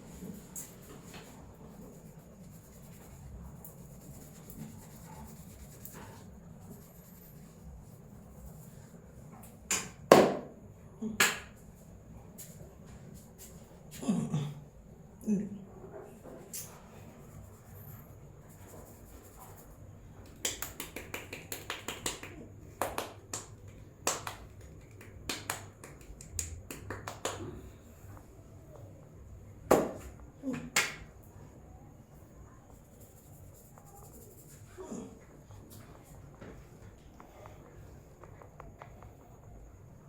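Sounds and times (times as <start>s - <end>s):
loud hand slaps: 9.7s - 10.5s, 11.2s - 11.6s, 20.4s - 27.5s, 29.7s - 31.1s
hands cracking and snapping: 20.3s - 27.5s.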